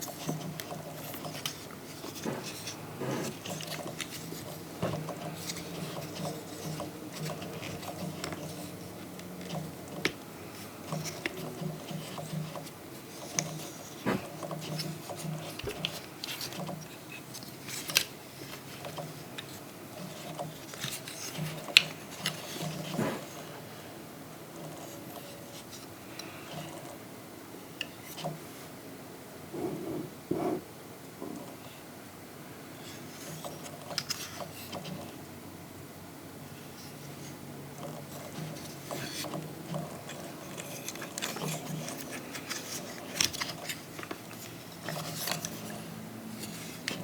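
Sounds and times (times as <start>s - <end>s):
plastic parts clicking and tapping: 0.0s - 10.2s, 10.8s - 23.0s, 37.8s - 45.8s.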